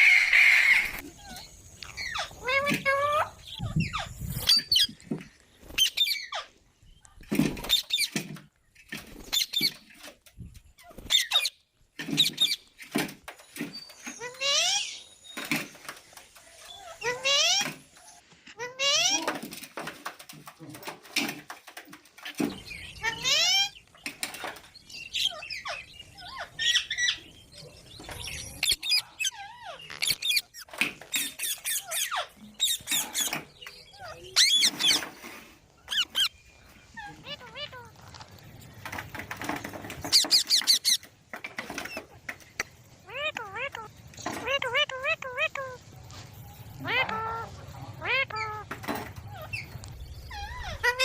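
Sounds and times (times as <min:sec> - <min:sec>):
parrot squawking: 0:28.6 - 0:35.0, 0:35.9 - 0:36.3, 0:36.9 - 0:37.9, 0:40.1 - 0:41.0, 0:43.0 - 0:45.8, 0:46.8 - 0:51.0.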